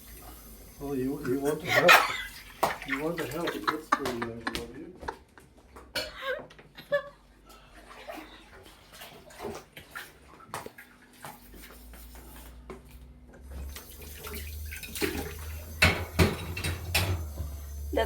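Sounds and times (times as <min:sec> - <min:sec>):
tap water running into sink: 0:00.0 - 0:04.7, 0:09.0 - 0:18.0
dishes clinking: 0:14.7 - 0:17.7.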